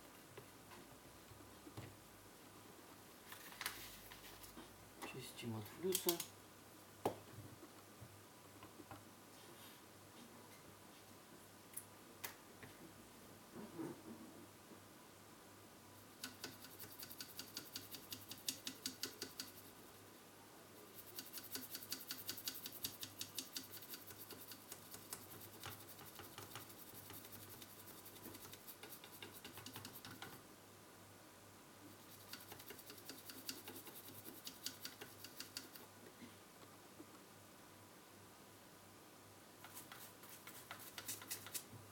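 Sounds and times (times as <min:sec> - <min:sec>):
brush scrubbing circuit board: 0:20.9 - 0:30.2, 0:32.0 - 0:35.8, 0:39.7 - 0:41.6.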